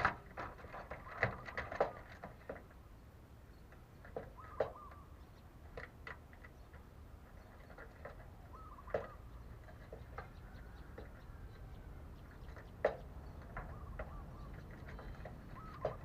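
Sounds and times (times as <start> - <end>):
faint bird chirps: 3.5 - 5.6, 6.5 - 16.0.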